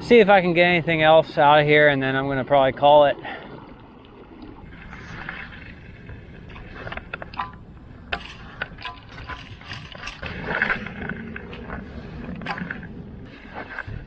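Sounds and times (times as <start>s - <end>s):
wind and water rumble: 0.0s - 14.0s
fishing gear clicks and knocks: 6.4s - 14.0s.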